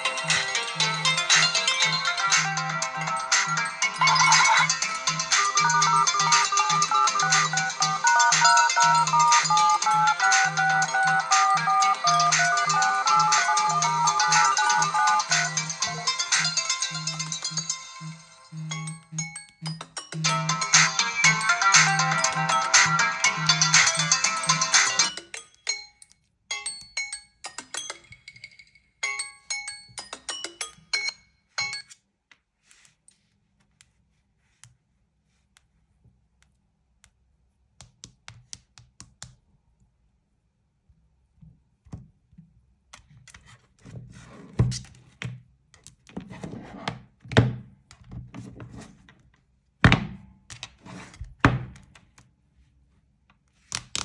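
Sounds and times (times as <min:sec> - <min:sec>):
smartphone chime tone: 0:00.0 - 0:19.5.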